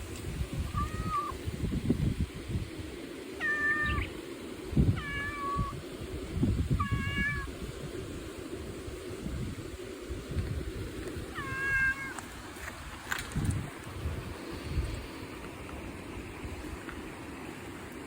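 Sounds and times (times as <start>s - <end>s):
cat meowing: 0.7s - 1.4s, 3.4s - 4.1s, 5.0s - 5.8s, 6.8s - 7.5s, 11.4s - 12.2s
low rustling noise: 12.1s - 18.0s.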